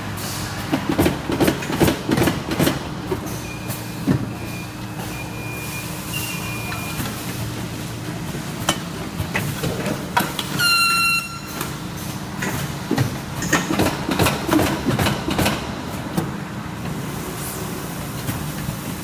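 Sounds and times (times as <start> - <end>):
machine clacks and knocks: 0.7 - 3.3, 12.4 - 15.8.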